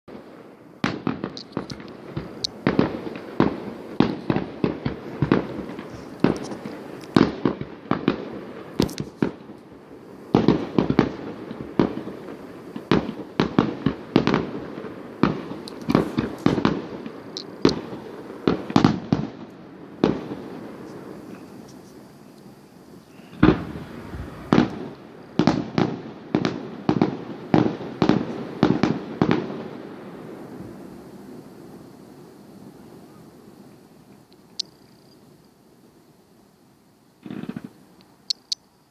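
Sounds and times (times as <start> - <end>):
fireworks bangs and pops: 0.1 - 31.9, 37.2 - 38.2.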